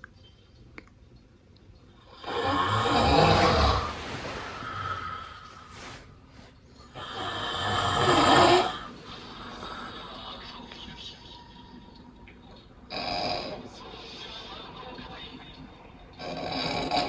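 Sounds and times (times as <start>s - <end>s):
person snoring loudly: 2.1s - 6.0s, 6.9s - 10.4s, 16.2s - 17.0s.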